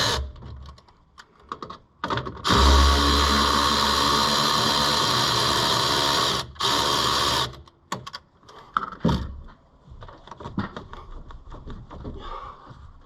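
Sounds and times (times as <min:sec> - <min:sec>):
power tool running: 0:00.0 - 0:00.4, 0:02.4 - 0:07.7.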